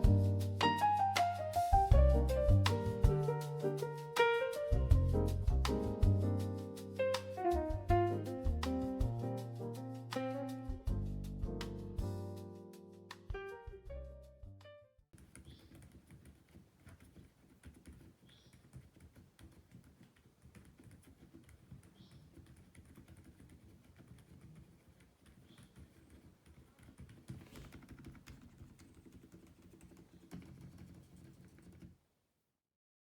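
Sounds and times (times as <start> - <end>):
typing on mechanical keyboard: 15.2 - 31.9.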